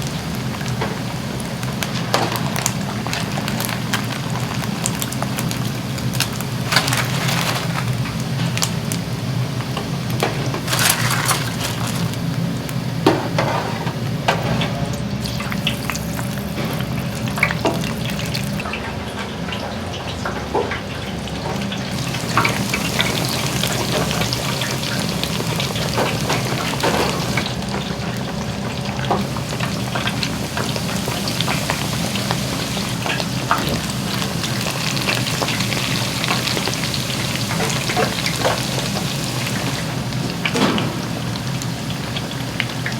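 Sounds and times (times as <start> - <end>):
food sizzling as it fries: 0.0 - 18.8, 21.2 - 42.9
cooking utensils clinking: 6.1 - 8.5, 9.8 - 15.1, 21.9 - 28.3.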